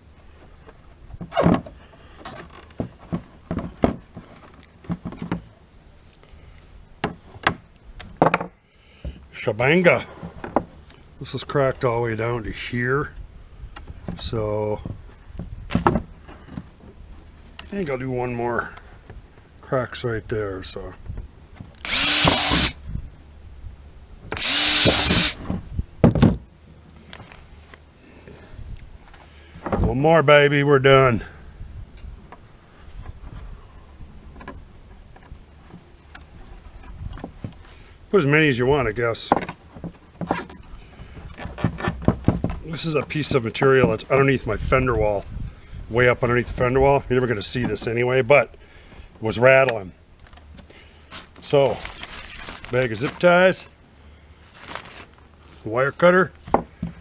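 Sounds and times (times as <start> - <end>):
power drill boring through plastic: 21.8 - 22.8, 24.4 - 25.4.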